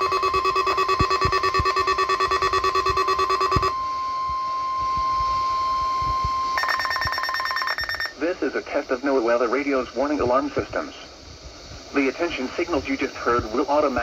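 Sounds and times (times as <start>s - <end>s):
rapid alarm beeps: 0.0s - 8.2s
steady alarm tone: 0.0s - 8.2s.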